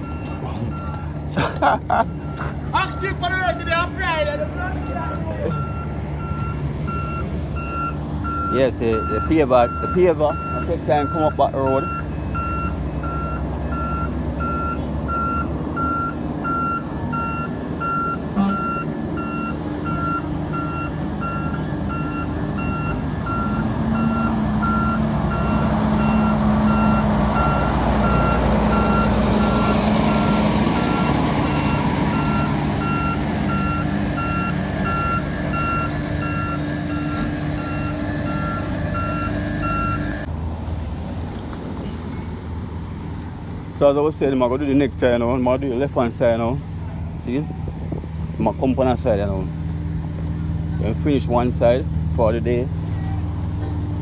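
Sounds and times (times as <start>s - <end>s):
reversing alarm beeping: 0.0s - 1.3s, 2.0s - 40.3s
diesel engine rumble: 0.0s - 54.0s.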